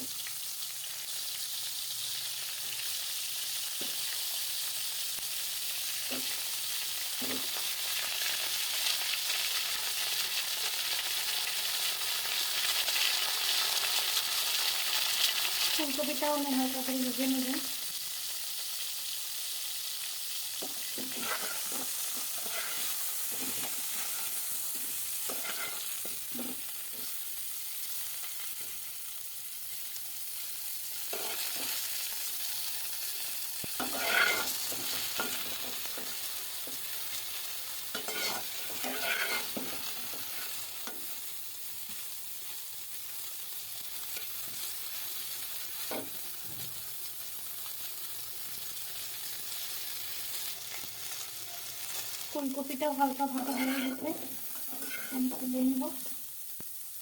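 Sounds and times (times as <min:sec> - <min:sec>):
vegetables sizzling in hot oil: 0:00.0 - 0:57.0
utensil scraping a pan: 0:20.6 - 0:27.1, 0:31.1 - 0:31.8, 0:33.8 - 0:36.8, 0:38.0 - 0:40.6, 0:53.3 - 0:55.5.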